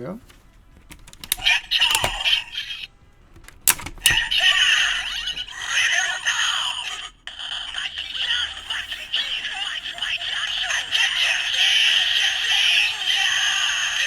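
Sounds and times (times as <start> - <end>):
toy belt click: 0.8 - 5.4
toy electronic sound effects and music: 1.3 - 2.9, 4.0 - 14.0.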